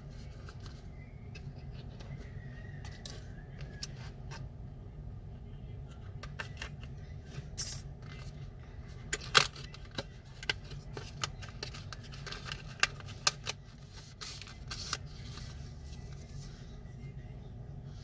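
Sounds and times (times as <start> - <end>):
steady low hum: 0.0 - 18.0
metal tools clicking and tapping: 2.8 - 3.9.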